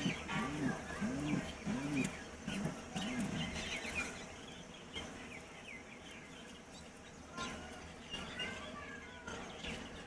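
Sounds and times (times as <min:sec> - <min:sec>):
pigeon cooing: 0:00.0 - 0:03.6
small birds chirping: 0:00.0 - 0:10.0.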